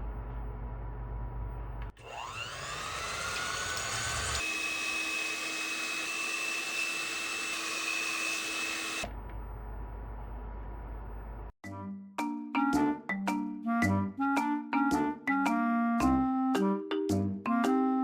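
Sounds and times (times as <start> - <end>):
electric motor whining: 2.0 - 9.0.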